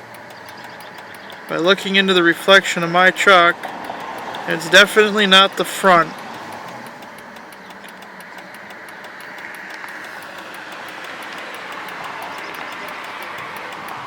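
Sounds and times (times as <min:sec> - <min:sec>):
car engine idling: 0:00.0 - 0:14.0
fast turn signal ticking: 0:00.0 - 0:14.0.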